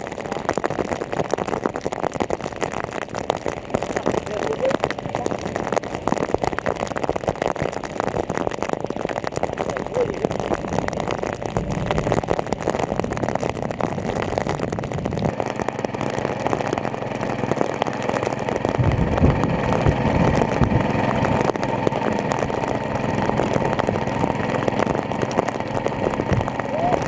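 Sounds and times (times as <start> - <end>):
engine-driven water pump running: 0.0 - 27.0
heavy low rumble: 9.6 - 27.0.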